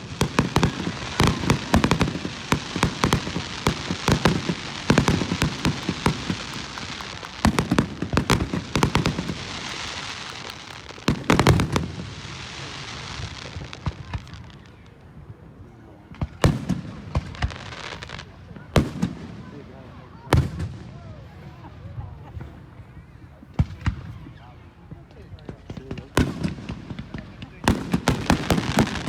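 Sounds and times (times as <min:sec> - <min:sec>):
fireworks crackle: 0:00.0 - 0:15.0, 0:16.4 - 0:19.2, 0:25.6 - 0:29.0
fireworks bangs and booms: 0:00.0 - 0:22.8, 0:23.5 - 0:29.0.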